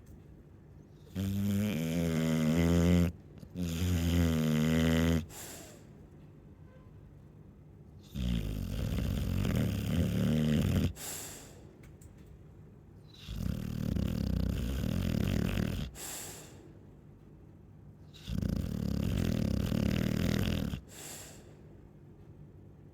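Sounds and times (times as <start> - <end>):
dog snoring: 1.0 - 5.8, 8.0 - 11.5, 13.1 - 16.6, 18.1 - 21.5
dog breathing: 1.0 - 6.0, 8.1 - 11.7, 13.1 - 16.8, 18.1 - 21.7.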